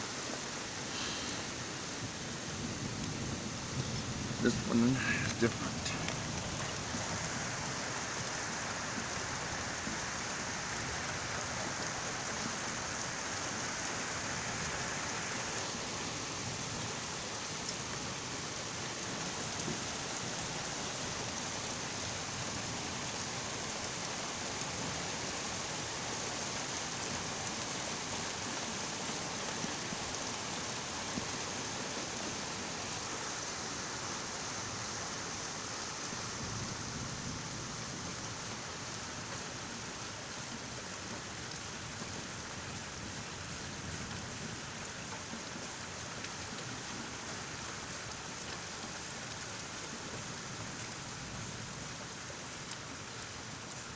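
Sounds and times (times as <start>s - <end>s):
rain falling steadily: 0.0s - 53.9s.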